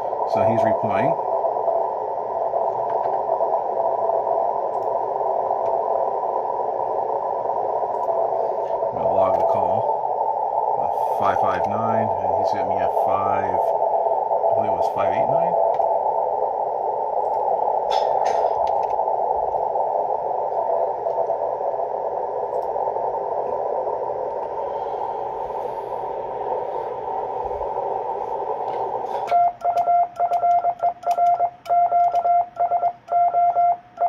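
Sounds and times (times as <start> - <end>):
radio static hiss: 0.0 - 34.0
morse code beeps: 29.3 - 34.0.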